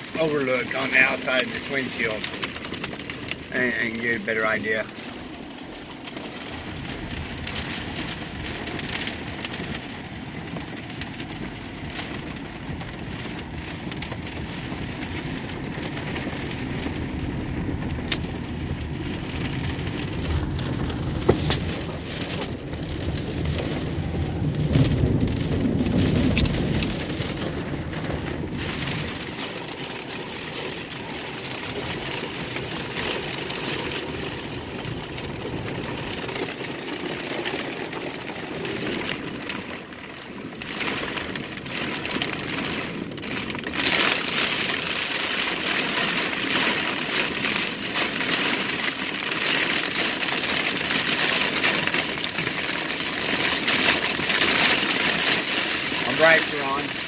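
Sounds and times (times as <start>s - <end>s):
car engine running: 0.0s - 39.6s
heavy rain on car roof: 0.0s - 57.0s.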